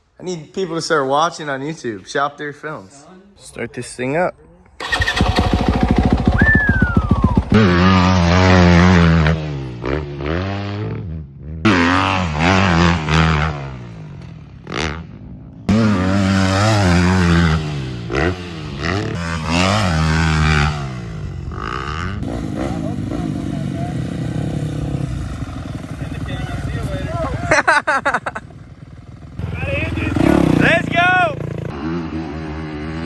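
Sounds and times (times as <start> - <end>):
motorcycle engine revving: 4.8 - 33.0.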